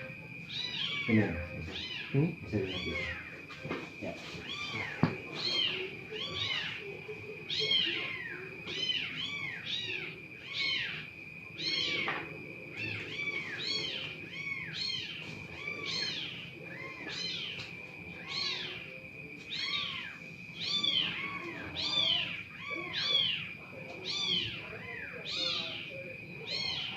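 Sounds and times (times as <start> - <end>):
faint steady high whine: 0.0 - 26.9
cat meowing: 0.5 - 3.4, 4.4 - 6.8, 7.5 - 11.0, 19.5 - 26.9.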